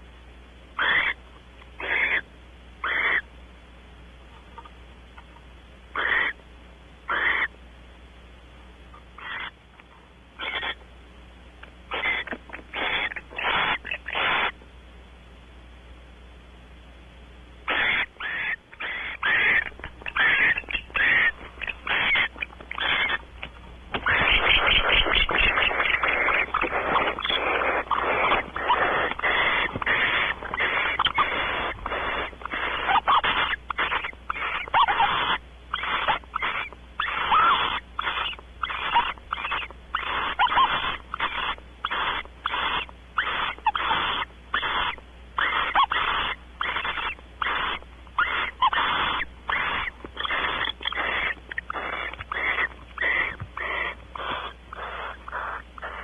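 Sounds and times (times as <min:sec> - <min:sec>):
barn owl hissing call: 0:00.7 - 0:01.2, 0:01.8 - 0:03.3, 0:05.9 - 0:06.4, 0:07.0 - 0:07.5, 0:09.2 - 0:09.6, 0:10.4 - 0:10.8, 0:11.9 - 0:14.6, 0:17.6 - 0:23.3, 0:24.0 - 0:56.0.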